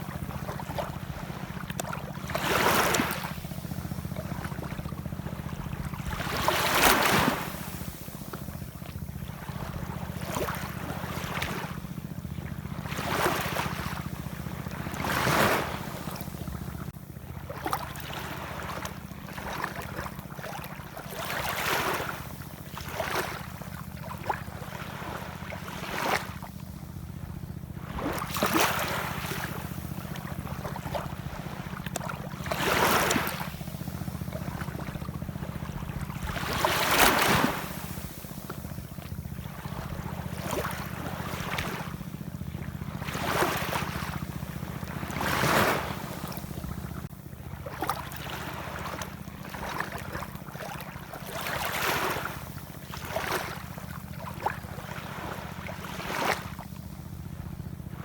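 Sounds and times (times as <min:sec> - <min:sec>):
ocean waves splashing: 0:00.0 - 0:08.8, 0:12.8 - 0:16.6, 0:27.8 - 0:42.1, 0:43.0 - 0:47.0, 0:47.7 - 0:56.5
steady low rumble: 0:26.4 - 0:47.7.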